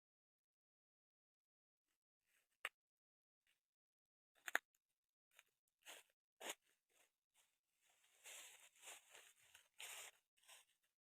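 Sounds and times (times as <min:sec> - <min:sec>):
faint crunching and crackling: 0:05.3 - 0:11.0.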